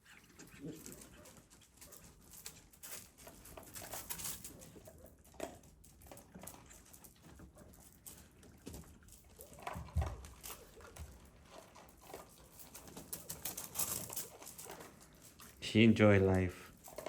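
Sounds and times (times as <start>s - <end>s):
puppies yipping: 0.0s - 2.2s
paws scuffling and pattering: 0.0s - 15.6s.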